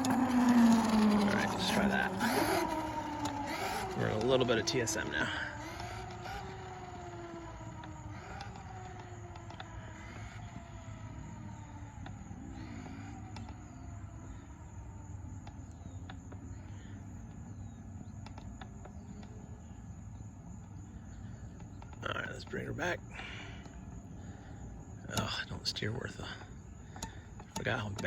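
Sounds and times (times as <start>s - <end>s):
electric motor whining: 0.0s - 16.7s.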